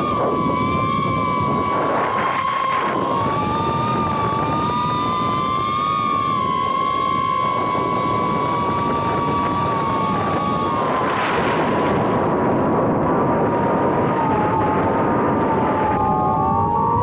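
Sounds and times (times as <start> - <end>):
rushing air: 0.0 - 14.3
drone motors whining: 0.0 - 17.0.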